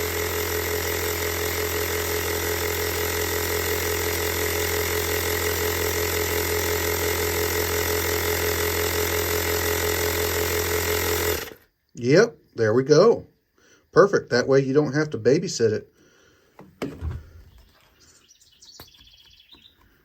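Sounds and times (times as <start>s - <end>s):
portable air compressor running: 0.0s - 11.7s.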